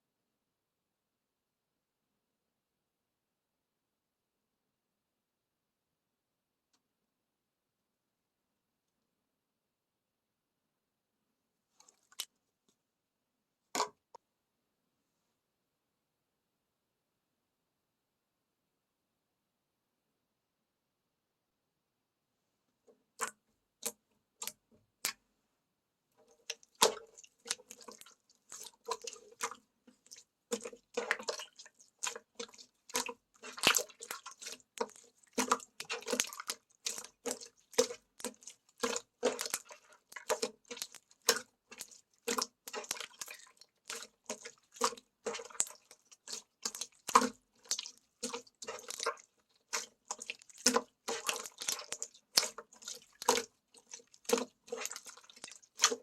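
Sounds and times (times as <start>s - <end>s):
slime squelching and clicking: 11.8s - 12.4s, 13.8s - 14.2s, 23.1s - 25.2s, 26.2s - 56.0s.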